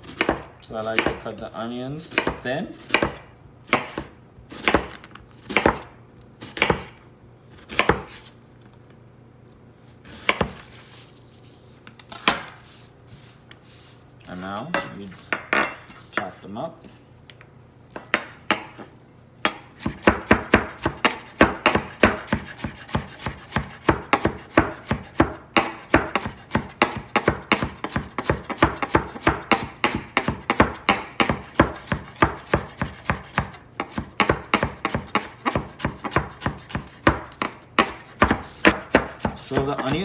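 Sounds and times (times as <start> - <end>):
knife chopping onion on board: 0.0 - 8.2, 10.0 - 10.7, 19.4 - 40.0.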